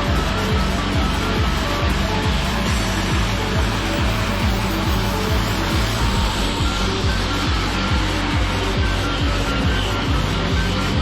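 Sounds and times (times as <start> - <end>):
electronic music: 0.0 - 11.0
kick drum beat: 0.0 - 11.0
short synth notes: 0.8 - 9.0.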